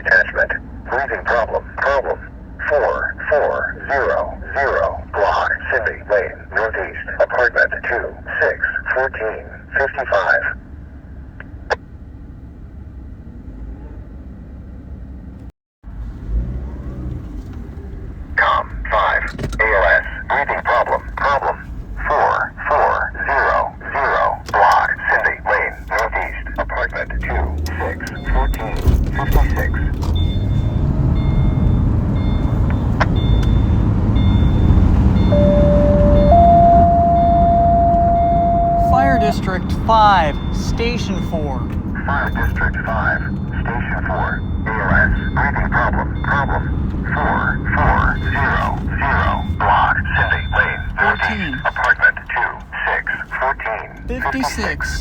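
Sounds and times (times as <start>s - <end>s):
two-tone radio page: 0.0s - 10.6s, 18.3s - 30.3s, 35.1s - 55.0s
vehicle engine rumbling: 0.0s - 55.0s
faint high beeps: 18.4s - 55.0s.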